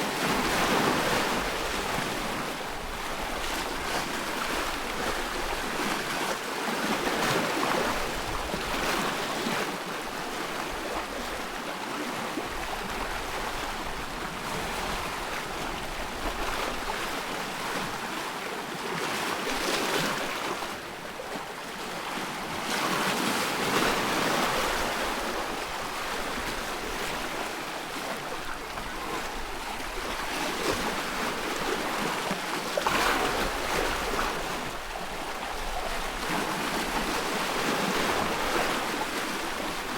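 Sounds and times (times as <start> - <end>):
wind: 0.0 - 39.9
waves washing in: 21.6 - 39.9.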